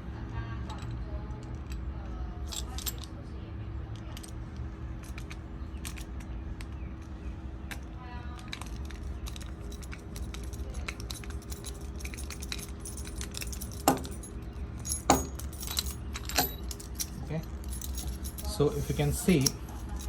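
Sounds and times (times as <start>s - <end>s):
metal hardware clinking: 8.4s - 20.0s.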